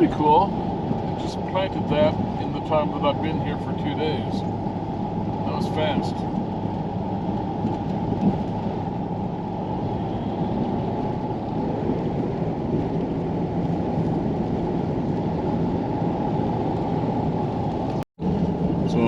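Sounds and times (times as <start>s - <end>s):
engine and tyre rumble in cab: 0.0s - 19.0s.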